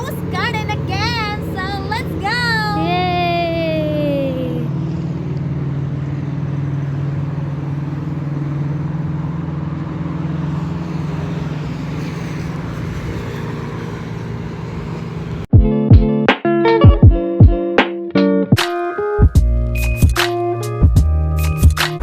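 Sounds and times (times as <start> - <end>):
vehicle engine running: 0.0 - 15.5
road noise: 0.0 - 15.6.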